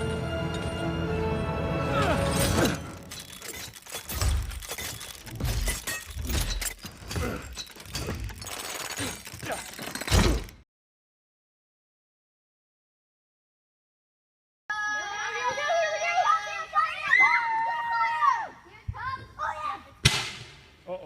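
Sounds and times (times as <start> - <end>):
music: 0.0 - 3.2
sharp crashes and knocks: 2.5 - 10.6.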